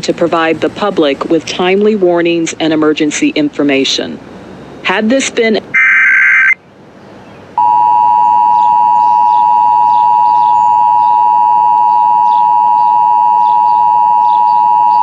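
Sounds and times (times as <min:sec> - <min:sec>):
two-tone alert signal: 0:07.6 - 0:15.0.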